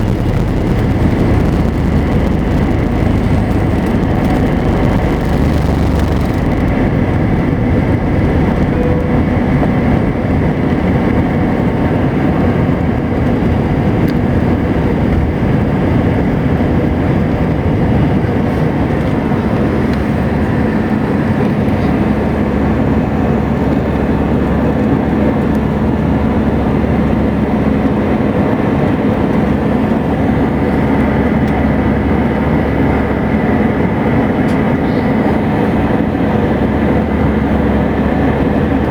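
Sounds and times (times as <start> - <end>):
rushing air: 0.0 - 12.2
steady hum: 0.0 - 12.4
jet engines rumbling: 0.0 - 38.9.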